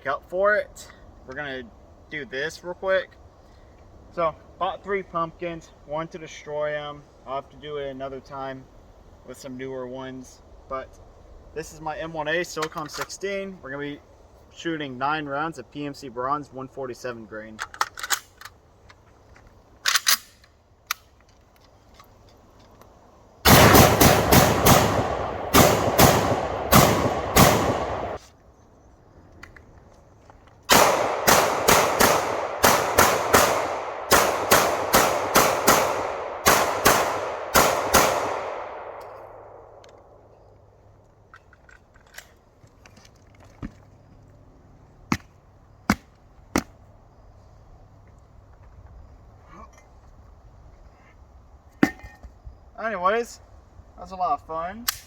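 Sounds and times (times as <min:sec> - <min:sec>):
rifle shots with ringing: 0:23.4 - 0:28.2, 0:30.7 - 0:39.8.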